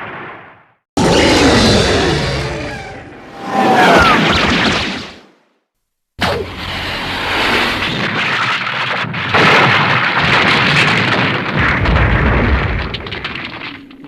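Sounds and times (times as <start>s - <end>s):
roaring explosion blast: 1.0s - 5.0s, 9.3s - 13.5s
deep rumble: 6.2s - 8.3s.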